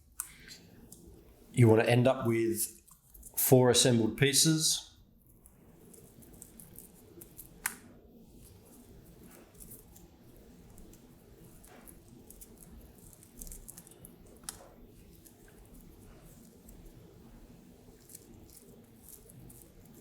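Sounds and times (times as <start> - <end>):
velcro strips rustling: 8.4 - 20.0.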